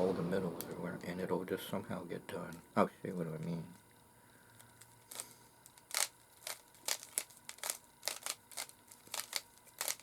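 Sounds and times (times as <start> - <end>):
puzzle cube twisting clicks: 4.8 - 10.0.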